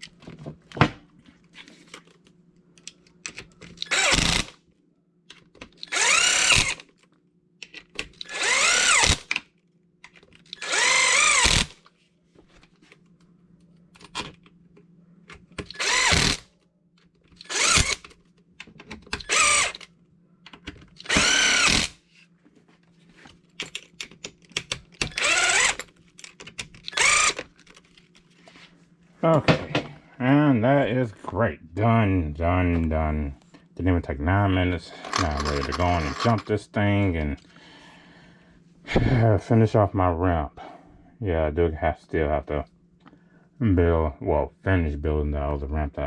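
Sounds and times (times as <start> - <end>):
power driver whining: 3.7 - 4.6, 5.8 - 6.9, 8.2 - 9.3, 10.5 - 11.8, 15.6 - 16.4, 17.4 - 18.1, 19.1 - 19.9, 21.0 - 22.0, 25.0 - 25.9, 26.9 - 27.4.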